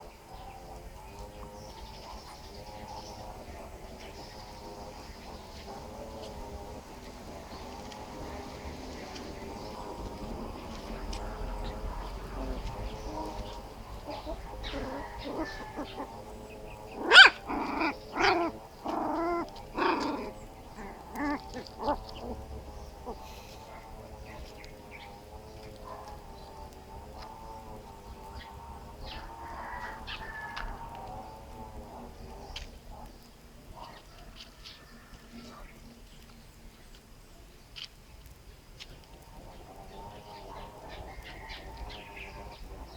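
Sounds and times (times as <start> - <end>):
puppies yapping: 12.2 - 24.0
puppy yelping: 14.2 - 16.1, 17.0 - 22.4.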